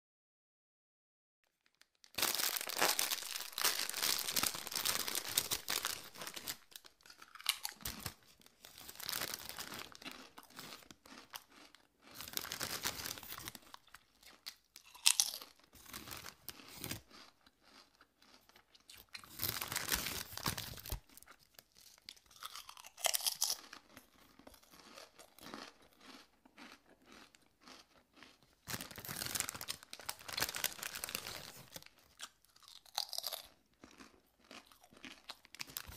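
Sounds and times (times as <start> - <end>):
person chewing crunchy food: 2.2 - 35.9.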